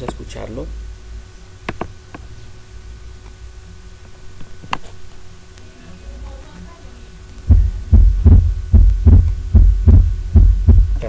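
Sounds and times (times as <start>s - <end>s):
low hum: 7.2s - 11.0s
heartbeat through stethoscope: 7.5s - 11.0s.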